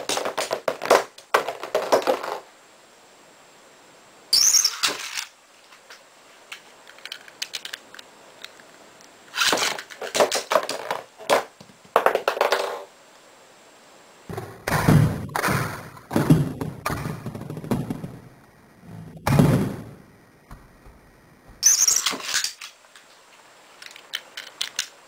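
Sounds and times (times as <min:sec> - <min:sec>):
heavy knocking and rattling: 0:14.3 - 0:18.4.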